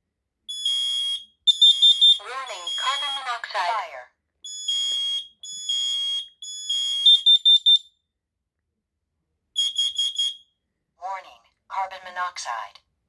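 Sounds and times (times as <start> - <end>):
smoke alarm long high beeps: 0.5 - 3.8, 4.4 - 8.0, 9.6 - 10.6
second alarm quick higher pulses: 1.8 - 3.4.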